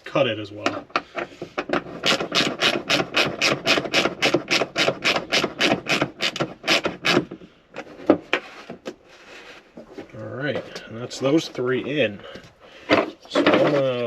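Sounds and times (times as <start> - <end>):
hand ratchet clicking: 1.0 - 7.3.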